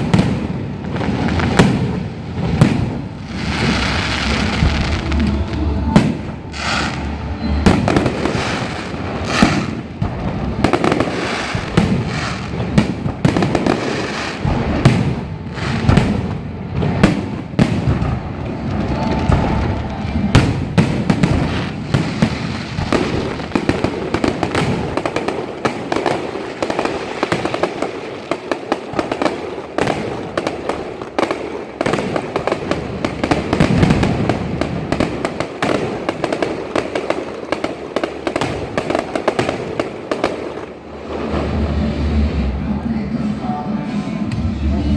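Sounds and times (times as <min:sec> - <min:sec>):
firecrackers and fireworks banging: 0:00.0 - 0:44.9.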